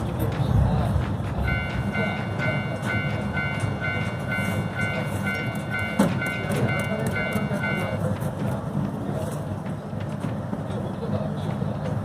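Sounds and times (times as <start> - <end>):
city traffic: 0.0 - 12.0
trains rumbling: 0.0 - 12.0
electronic signal beeping: 1.5 - 8.0.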